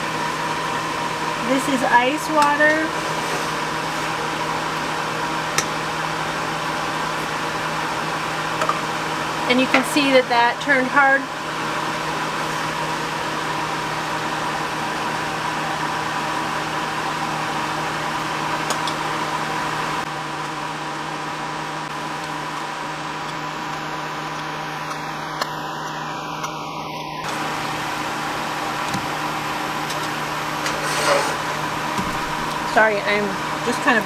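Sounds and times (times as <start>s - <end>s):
whirring hiss with low hum: 0.0s - 14.3s, 24.2s - 34.0s.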